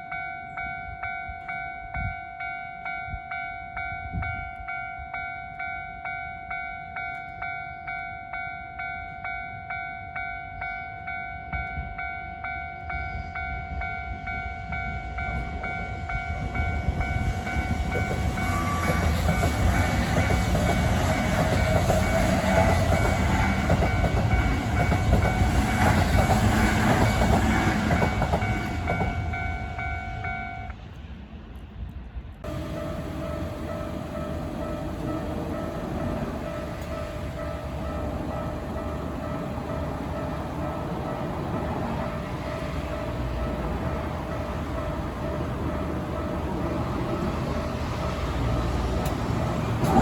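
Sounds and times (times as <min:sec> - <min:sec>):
level-crossing bell clanging: 0:00.0 - 0:30.7, 0:32.4 - 0:50.0
electric train passing: 0:00.0 - 0:50.0
train wheel rumble: 0:11.1 - 0:50.0.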